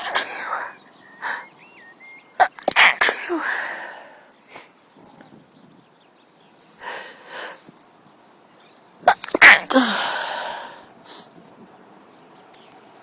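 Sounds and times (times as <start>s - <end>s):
woman sneezing: 0.0s - 0.7s, 2.4s - 3.8s, 9.1s - 10.5s
woman breathing: 3.3s - 4.7s, 6.8s - 7.6s, 9.7s - 11.3s.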